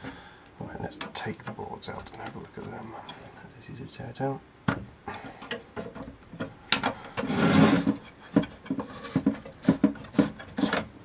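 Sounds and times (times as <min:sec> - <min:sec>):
circuit board scraping slide: 0:07.2 - 0:08.2.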